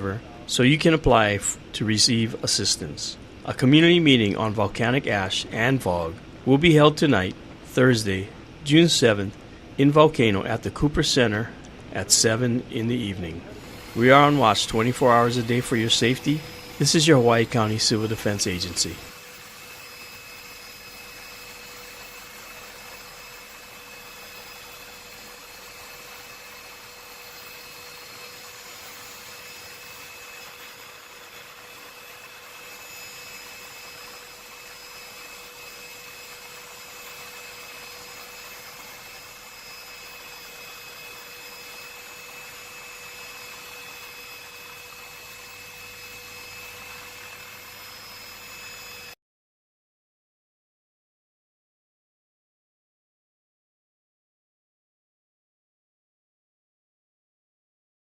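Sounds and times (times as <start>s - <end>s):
faint constant hum: 0.0s - 19.2s
high whine: 0.0s - 49.2s.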